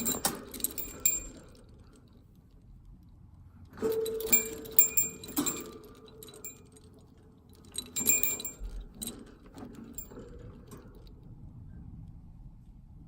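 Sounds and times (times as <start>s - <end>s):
small metal objects jingling: 0.0s - 1.6s, 3.9s - 10.2s.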